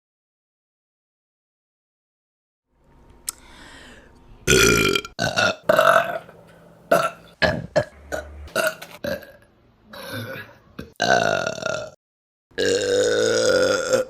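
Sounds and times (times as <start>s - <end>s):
woman burping: 4.5s - 6.2s, 6.9s - 12.0s, 12.6s - 14.0s.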